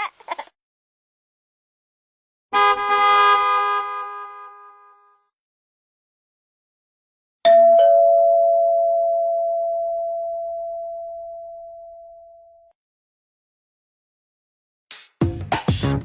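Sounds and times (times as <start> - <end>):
two-note ding-dong chime ringtone: 7.5 - 12.7.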